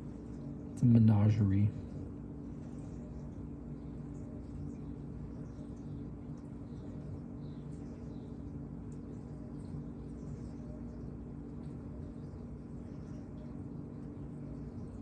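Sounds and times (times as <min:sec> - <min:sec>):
small birds chirping: 0:00.0 - 0:15.0
steady low hum: 0:00.0 - 0:15.0.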